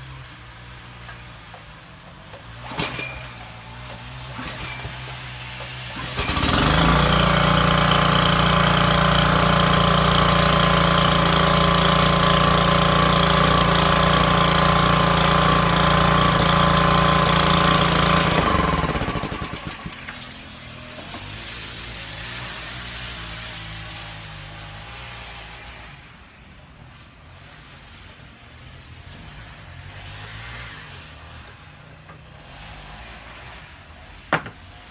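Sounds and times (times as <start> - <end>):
pressure washer running: 5.1 - 23.7.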